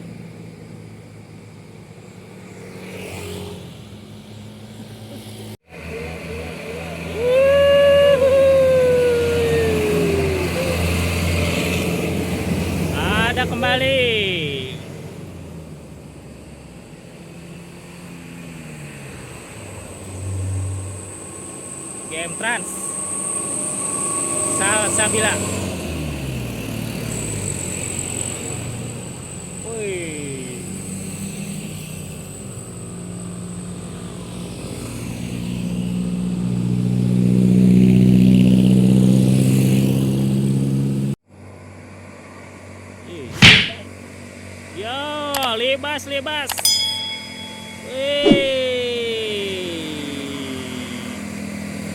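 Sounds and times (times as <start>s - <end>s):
heavy vehicle engine approaching: 0.0s - 18.2s
bus diesel engine pulling uphill: 3.7s - 43.3s, 46.8s - 51.9s
sharp loud knock: 43.3s - 43.9s, 48.3s - 48.5s.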